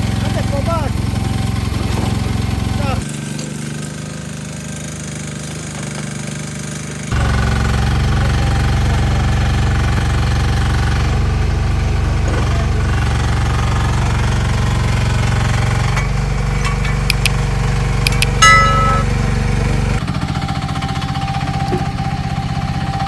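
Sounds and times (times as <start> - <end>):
diesel engine chugging: 0.0 - 23.0
metallic clanks: 15.4 - 19.7.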